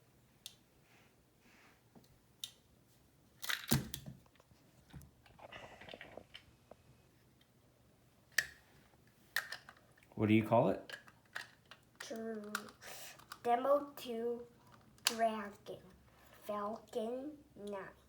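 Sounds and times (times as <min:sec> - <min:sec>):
plastic lego pieces clicking: 0:03.4 - 0:04.0, 0:09.4 - 0:09.9, 0:10.9 - 0:13.4.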